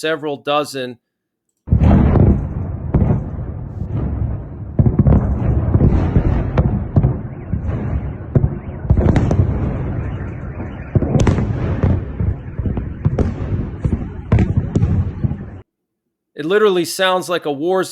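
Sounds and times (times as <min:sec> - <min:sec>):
sharp cracks: 0:01.7 - 0:15.6
shell explosions: 0:01.7 - 0:15.6.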